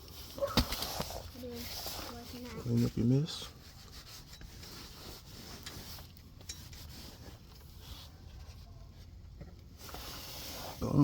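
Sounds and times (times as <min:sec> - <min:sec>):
cloth rag rubbing: 0:01.4 - 0:08.2.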